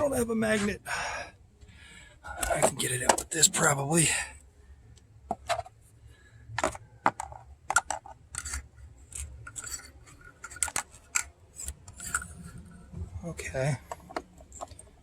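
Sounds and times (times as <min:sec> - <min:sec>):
hand tool clicking and scraping metal: 0:08.3 - 0:12.7.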